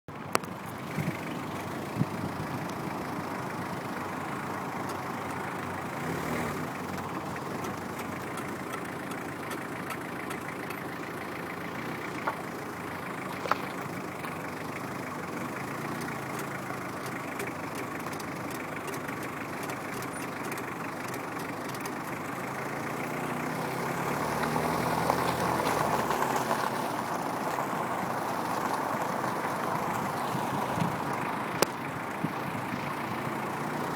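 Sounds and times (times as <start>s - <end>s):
car engine running: 0.1s - 33.9s
brake pedal noise: 0.3s - 23.4s.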